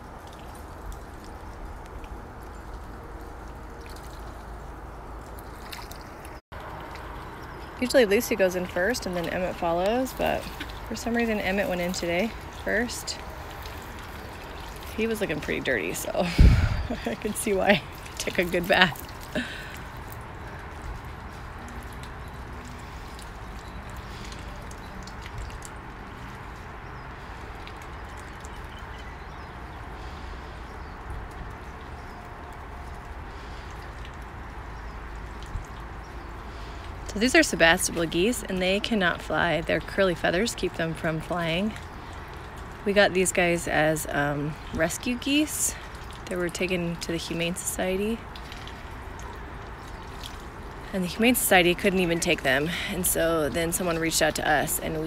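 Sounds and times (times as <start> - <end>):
geese splashing in water: 0.0 - 55.0
outdoor background noise: 0.0 - 55.0.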